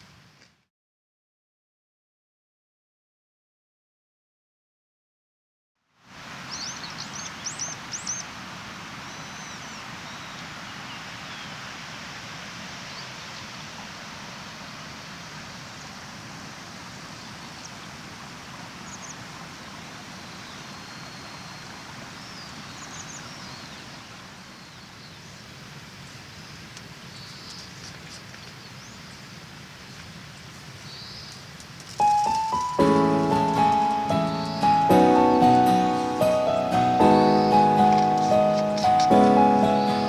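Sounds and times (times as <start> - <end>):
small birds chirping: 6.4 - 8.4, 9.0 - 11.6, 18.8 - 25.4, 27.1 - 29.3, 30.8 - 40.0
river rushing: 32.0 - 40.0.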